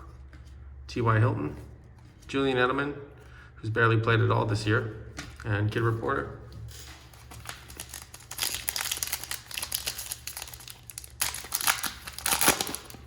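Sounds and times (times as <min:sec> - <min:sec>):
foil wrapper crinkling and tearing: 0:06.7 - 0:13.0.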